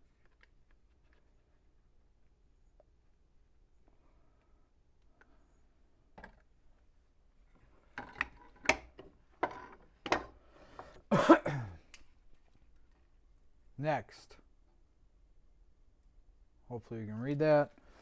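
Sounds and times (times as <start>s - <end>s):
man clearing his throat: 11.1s - 11.8s
man coughing: 11.1s - 11.8s.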